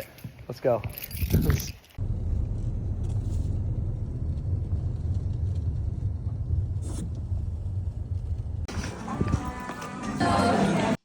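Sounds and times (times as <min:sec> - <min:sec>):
car driving rumble: 0:02.0 - 0:09.1.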